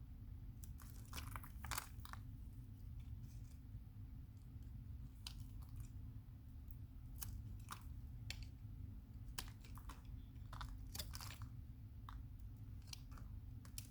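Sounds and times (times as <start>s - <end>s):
soap crunching and cracking: 0.6s - 2.4s, 6.7s - 13.9s.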